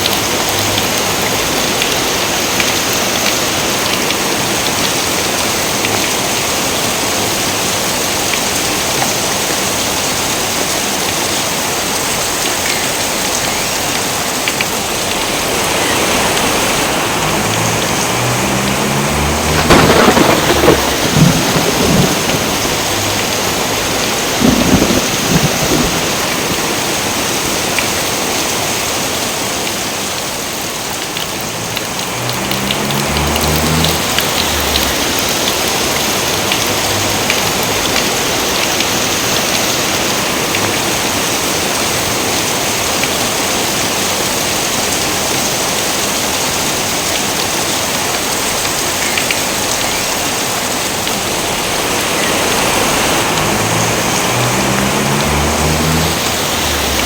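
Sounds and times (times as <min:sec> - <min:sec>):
rain falling: 0:00.0 - 0:57.0
thunder rumbling: 0:14.8 - 0:27.4, 0:31.5 - 0:38.2, 0:51.2 - 0:57.0.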